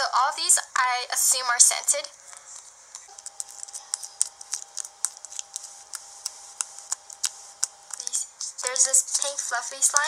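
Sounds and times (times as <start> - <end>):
faint steady hum: 0.0 - 10.0
slime clicking and popping: 3.0 - 8.2.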